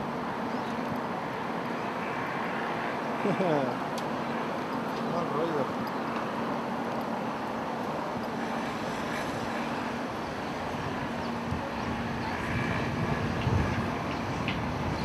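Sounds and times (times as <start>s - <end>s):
wind buffeting microphone: 7.8s - 15.0s.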